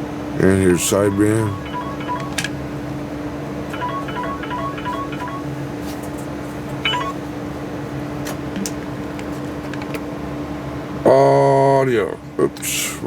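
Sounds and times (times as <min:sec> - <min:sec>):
short tone chirp: 0:06.8 - 0:07.2.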